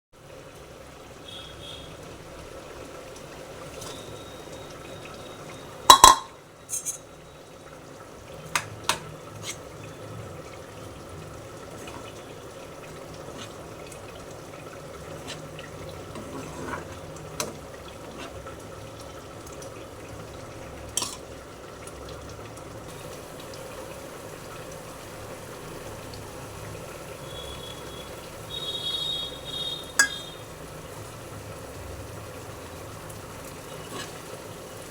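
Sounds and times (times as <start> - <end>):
utensils clinking against pots: 3.7 - 4.3, 5.9 - 7.2, 11.8 - 12.3, 15.2 - 18.4, 21.0 - 21.3, 29.8 - 30.4, 33.7 - 34.5
liquid sounds: 8.0 - 34.9.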